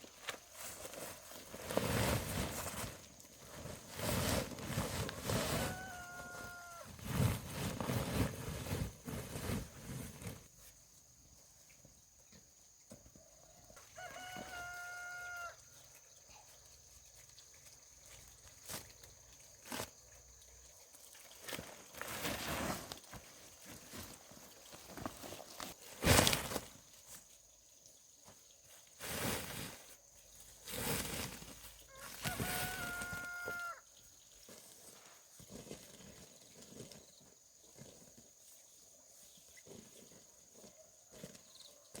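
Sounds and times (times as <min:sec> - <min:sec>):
rustling and knocking movement: 0:00.1 - 0:10.6
rooster crowing: 0:05.2 - 0:07.0, 0:13.4 - 0:15.7, 0:31.9 - 0:33.9.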